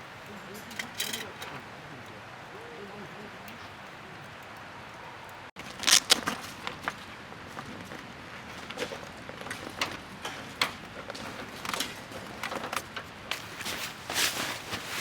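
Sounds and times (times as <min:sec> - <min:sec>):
short rustle: 0:13.3 - 0:15.0.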